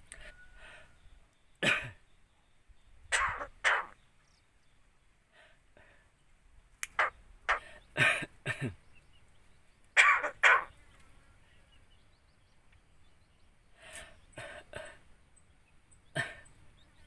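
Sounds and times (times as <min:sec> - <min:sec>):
bird mimicking a cough: 0:03.1 - 0:04.0, 0:07.0 - 0:08.8, 0:10.0 - 0:10.7.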